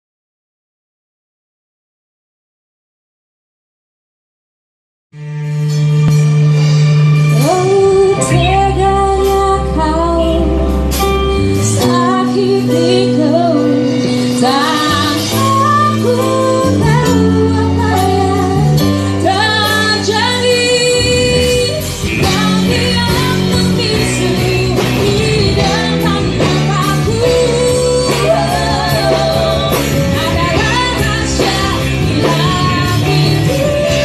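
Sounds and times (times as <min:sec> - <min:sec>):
band playing: 0:05.2 - 0:34.0
woman singing: 0:07.3 - 0:34.0.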